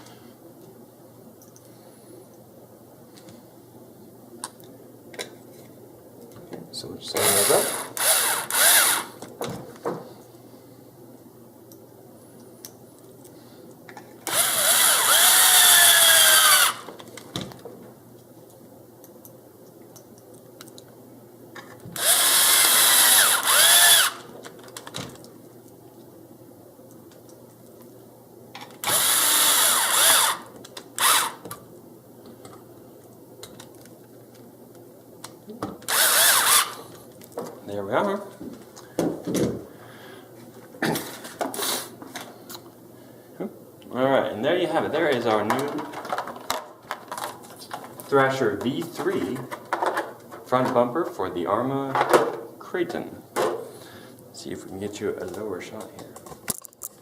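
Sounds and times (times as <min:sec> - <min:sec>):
power driver motor whine: 0:07.2 - 0:09.2, 0:14.3 - 0:16.9, 0:22.0 - 0:24.3, 0:28.8 - 0:31.5, 0:35.9 - 0:36.8.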